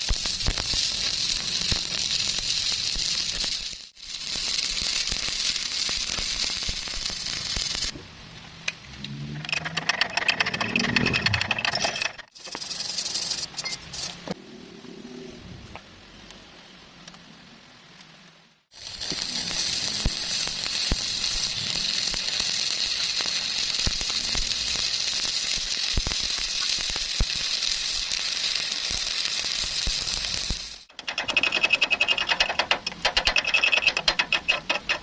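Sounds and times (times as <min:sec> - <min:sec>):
welding arc crackling and hissing: 0:00.0 - 0:08.0, 0:10.4 - 0:14.4, 0:18.7 - 0:35.0
sharp metallic ticks: 0:09.4 - 0:14.1, 0:29.8 - 0:35.0.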